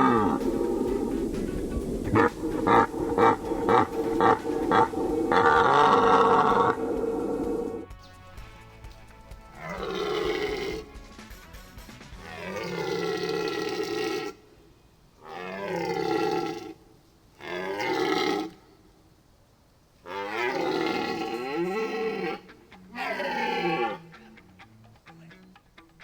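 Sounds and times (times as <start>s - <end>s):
large animal roaring: 0.0s - 7.9s, 9.6s - 10.9s, 12.2s - 14.4s, 15.2s - 16.8s, 17.4s - 18.6s, 20.1s - 24.1s.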